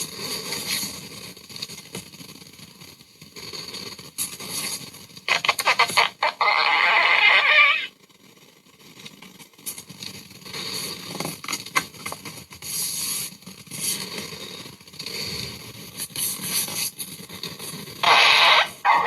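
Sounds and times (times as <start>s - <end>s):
fart sound effects: 5.3s - 7.9s, 18.0s - 19.0s.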